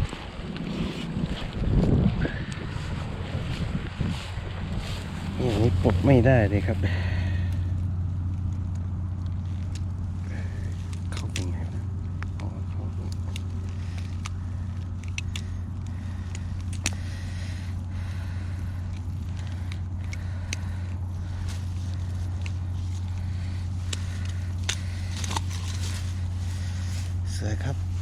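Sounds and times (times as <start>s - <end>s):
steady low hum: 0.0s - 28.0s
small clicks and ticks: 7.5s - 17.1s.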